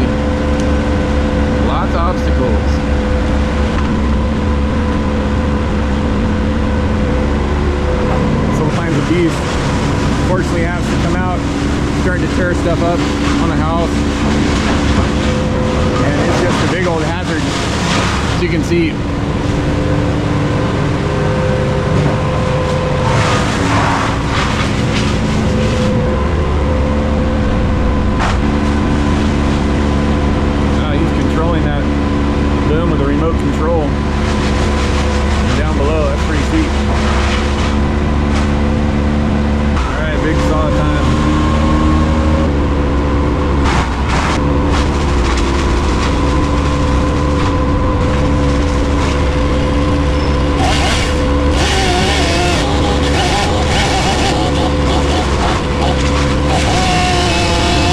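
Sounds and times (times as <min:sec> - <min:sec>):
diesel engine of heavy machinery: 0:00.0 - 0:57.9.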